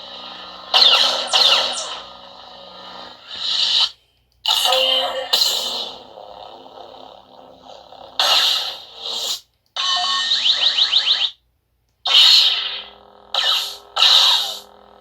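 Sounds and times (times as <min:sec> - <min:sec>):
lightsaber bursts: 0:00.0 - 0:02.2, 0:12.0 - 0:14.9
lightsaber buzzing hum: 0:00.0 - 0:03.9, 0:04.5 - 0:11.4, 0:12.0 - 0:15.0.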